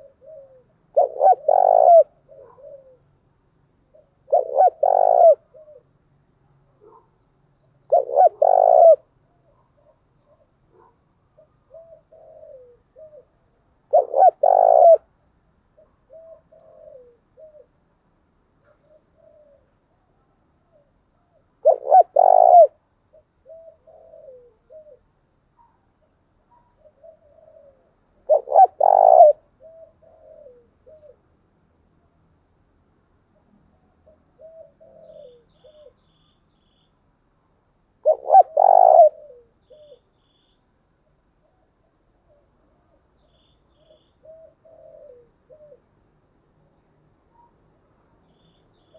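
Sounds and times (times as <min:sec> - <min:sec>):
dove cooing: 0:00.0 - 0:06.2, 0:07.9 - 0:15.1, 0:15.7 - 0:17.8, 0:18.6 - 0:31.3, 0:33.9 - 0:36.0, 0:38.0 - 0:40.1, 0:41.3 - 0:46.0.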